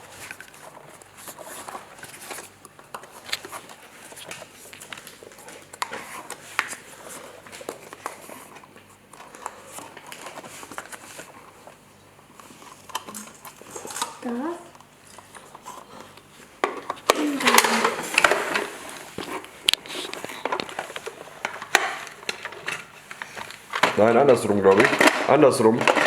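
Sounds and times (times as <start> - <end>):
plastic pieces clicking: 16.6 - 18.8
plastic pieces rustling: 16.6 - 26.0.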